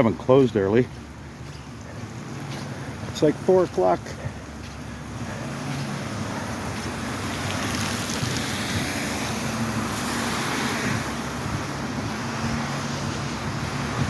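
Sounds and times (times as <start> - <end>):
wind: 0.0 - 14.0
rain: 3.8 - 14.0.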